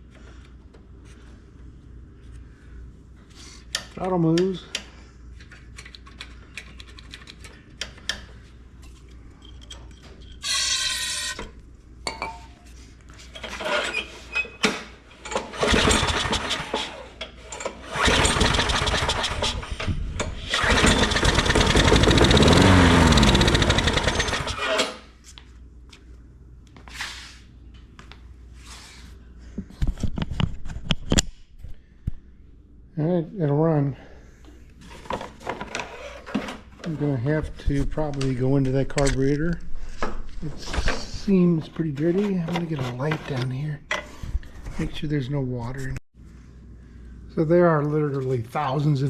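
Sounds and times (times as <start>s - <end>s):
mower engine pull-start: 15.2s - 25.0s
small mower engine running: 15.5s - 17.0s, 17.8s - 25.0s.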